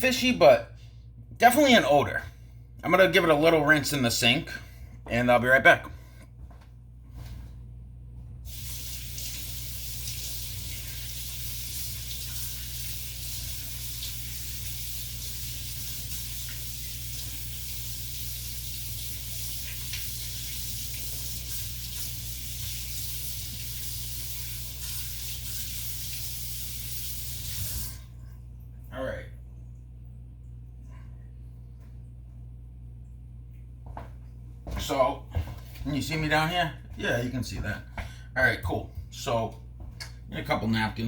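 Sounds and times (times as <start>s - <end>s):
constant low hum: 0.0s - 26.7s, 27.3s - 41.0s
tap water running: 8.4s - 28.2s.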